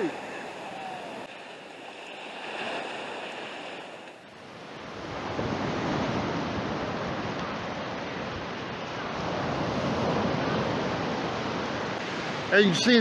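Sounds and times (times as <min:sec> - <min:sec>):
ocean surf washing onto beach: 0:00.0 - 0:13.0
wind on microphone: 0:04.4 - 0:12.5.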